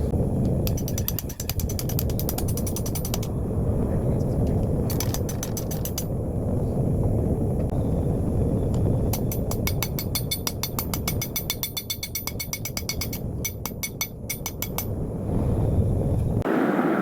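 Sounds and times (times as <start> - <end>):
forge burner roar: 0.0 - 17.0
hammer on hot steel: 0.6 - 3.3, 9.1 - 15.0.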